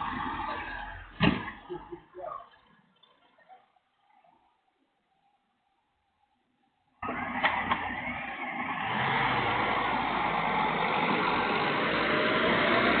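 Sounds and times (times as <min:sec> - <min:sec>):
car engine and road noise: 0:00.0 - 0:02.6, 0:07.0 - 0:13.0.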